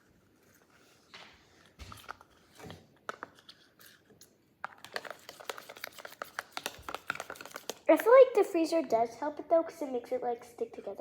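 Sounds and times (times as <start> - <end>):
spoon stirring sticky slime: 1.9 - 8.8.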